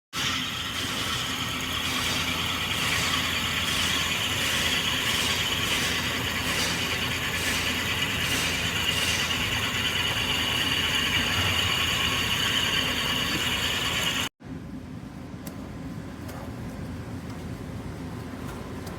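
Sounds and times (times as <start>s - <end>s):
car engine running: 2.8s - 14.3s.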